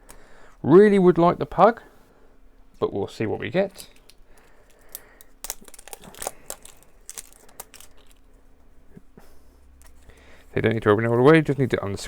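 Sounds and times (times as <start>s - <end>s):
plastic packaging crinkling: 3.8s - 8.4s.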